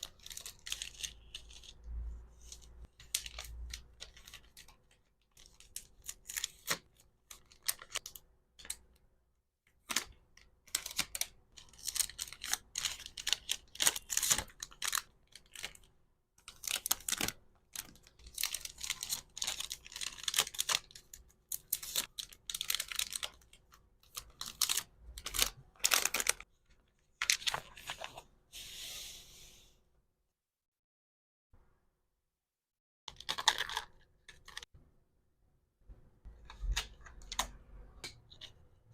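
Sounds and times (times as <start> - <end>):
plastic packaging clicks and crinkles: 9.8 - 26.5, 33.1 - 34.7
packaging rustle: 16.5 - 26.5.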